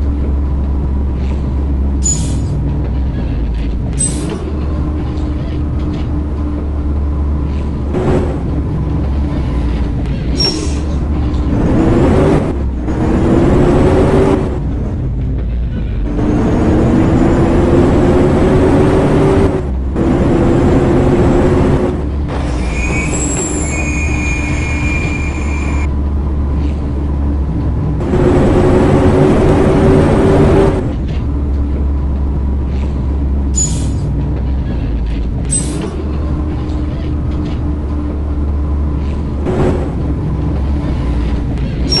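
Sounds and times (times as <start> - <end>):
heavy vehicle rumbling: 0.0 - 42.0
high-pitched squeals: 9.4 - 11.1, 22.3 - 25.9, 41.7 - 42.0.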